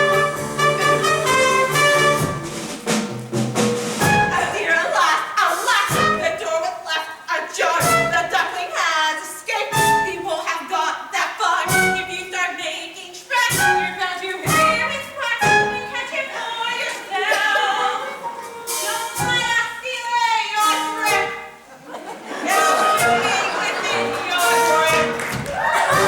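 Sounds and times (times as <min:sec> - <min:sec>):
instrumental accompaniment: 0:00.0 - 0:04.7, 0:18.0 - 0:19.6, 0:20.6 - 0:21.7, 0:22.3 - 0:26.0
steady beat: 0:00.0 - 0:04.8
voices singing: 0:04.1 - 0:26.0.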